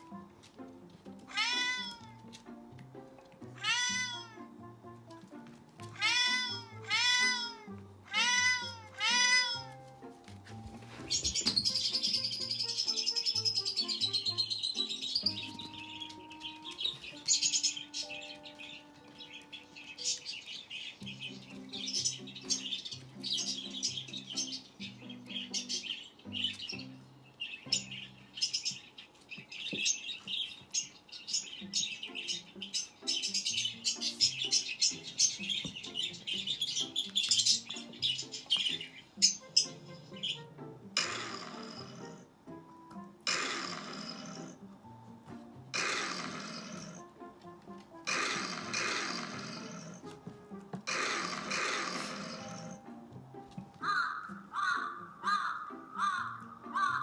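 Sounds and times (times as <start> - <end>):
birds chirping: 0.0 - 57.0
soft background music: 0.0 - 57.0
cat meowing: 1.2 - 2.3, 3.5 - 4.5, 5.8 - 9.8.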